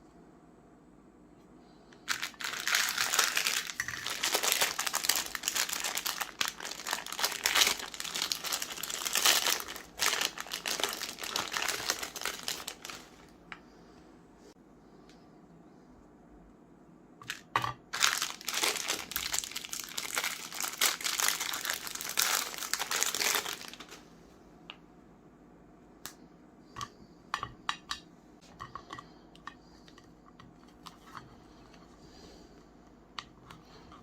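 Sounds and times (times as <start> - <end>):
dense crinkling and crunching: 2.0 - 13.4, 17.9 - 24.1.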